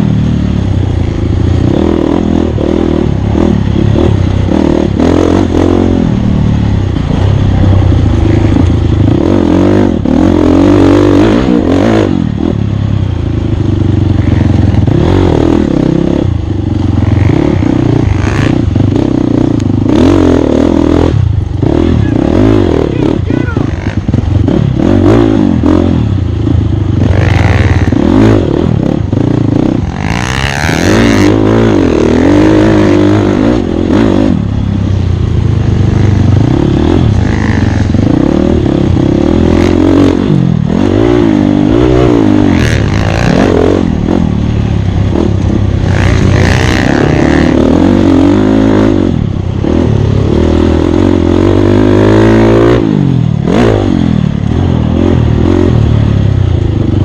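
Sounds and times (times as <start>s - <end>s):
dirt bike engine revving: 0.0s - 57.0s.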